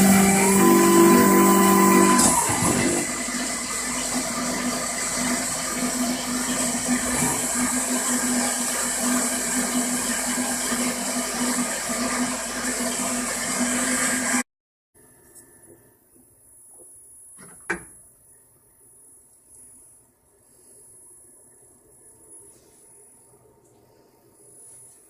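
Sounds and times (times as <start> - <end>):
milling machine cutting hiss: 0.0 - 14.3.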